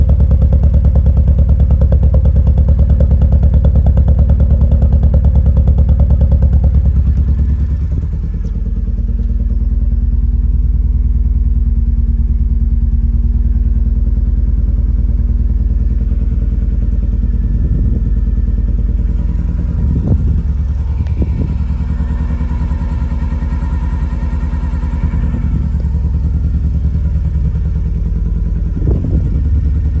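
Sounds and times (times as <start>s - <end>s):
car engine running with misfire: 0.0s - 30.0s.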